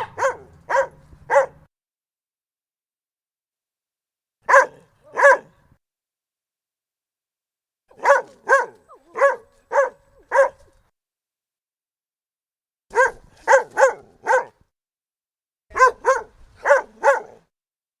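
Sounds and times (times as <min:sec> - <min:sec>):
dog barking: 0:00.0 - 0:01.7, 0:04.4 - 0:05.6, 0:07.9 - 0:10.8, 0:12.9 - 0:14.6, 0:15.7 - 0:17.5.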